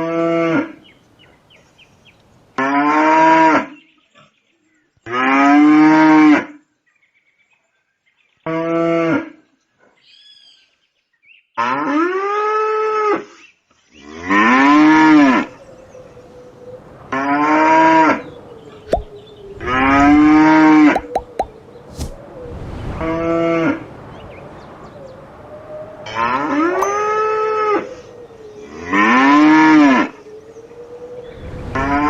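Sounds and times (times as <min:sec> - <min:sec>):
cattle mooing: 0:28.6 - 0:30.2.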